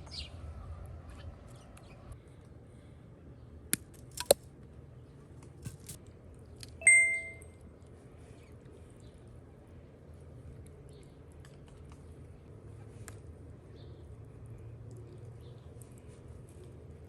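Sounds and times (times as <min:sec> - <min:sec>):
metallic ping: 0:06.8 - 0:07.4.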